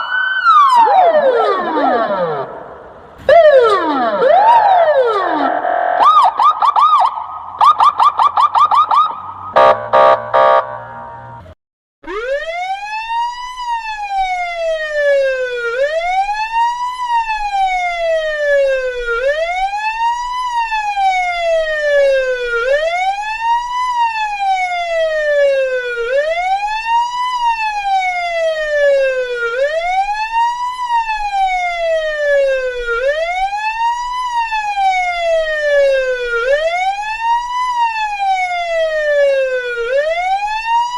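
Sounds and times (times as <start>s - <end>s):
police siren yelp: 0.0s - 11.4s, 12.0s - 40.9s
pulsed quacking siren blasts: 0.0s - 12.8s
siren wail: 0.0s - 40.9s.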